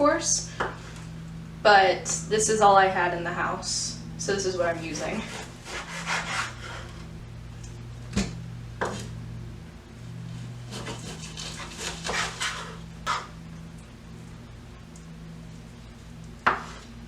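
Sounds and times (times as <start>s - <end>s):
steady low hum: 0.0s - 17.0s
knife slicing raw chicken: 10.7s - 13.3s.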